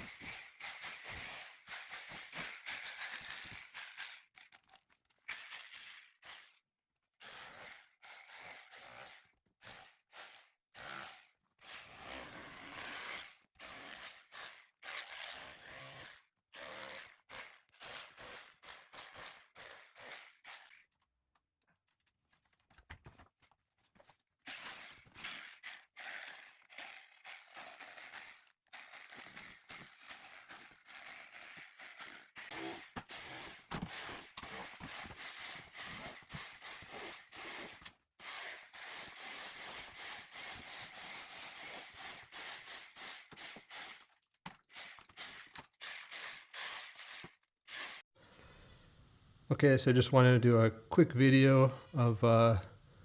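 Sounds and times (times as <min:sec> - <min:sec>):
hand tool scraping plaster: 0:00.0 - 0:04.8, 0:09.7 - 0:20.4, 0:23.9 - 0:48.1.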